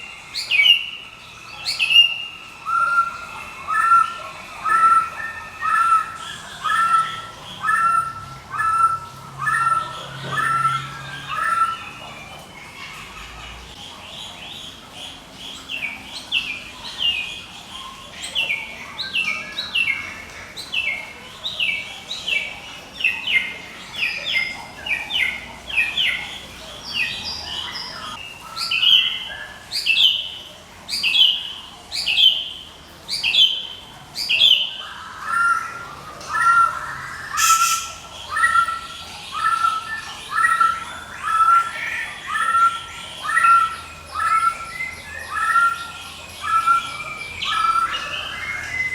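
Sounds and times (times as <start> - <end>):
bird repeating sharp notes: 37.3 - 38.6.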